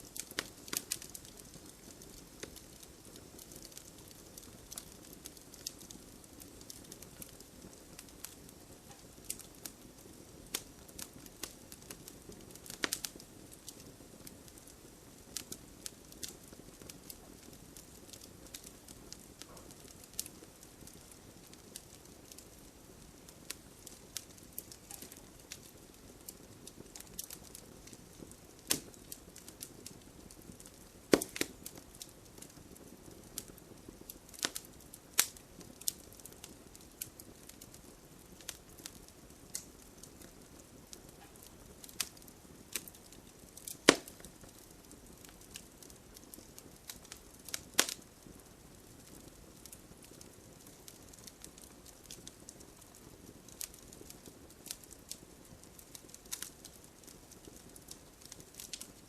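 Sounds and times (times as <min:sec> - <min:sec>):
fire hissing: 0:00.0 - 0:51.2
burning logs crackling and popping: 0:00.0 - 0:59.0.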